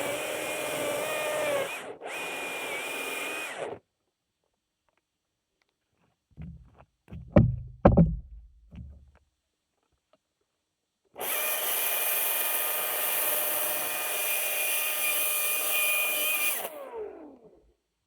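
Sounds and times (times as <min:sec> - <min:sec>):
battery chainsaw whining: 0:11.2 - 0:17.4.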